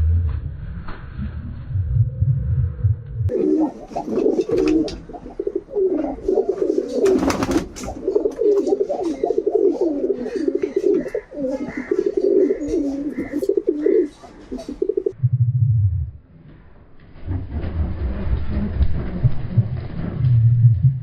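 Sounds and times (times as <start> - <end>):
pigeons cooing: 3.3 - 15.2.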